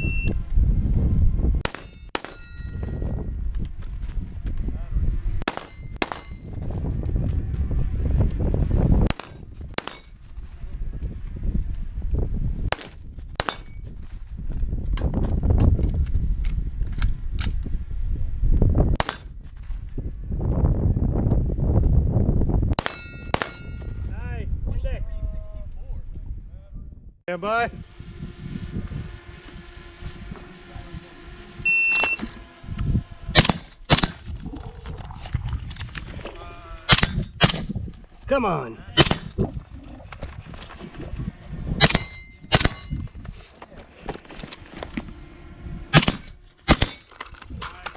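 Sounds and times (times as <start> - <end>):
shot timer beep: 0.0 - 0.4, 31.6 - 32.3
steel target ringing: 1.6 - 3.2, 5.5 - 6.6, 22.8 - 24.1, 41.8 - 43.2, 45.9 - 47.2
rifle shots: 5.5 - 6.4, 33.4 - 34.3, 36.9 - 37.7, 41.8 - 43.0, 45.9 - 47.1
low rumbling noise: 23.7 - 47.6.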